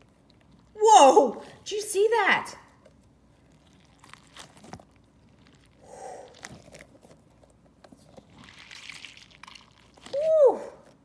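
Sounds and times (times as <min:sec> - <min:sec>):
soft handling clicks and rustles: 0:06.4 - 0:08.4.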